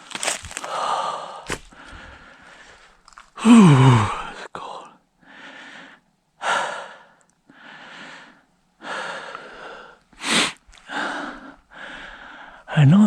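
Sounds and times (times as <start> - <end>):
man breathing hard: 0.5 - 12.8
sharp sniff: 10.2 - 10.6.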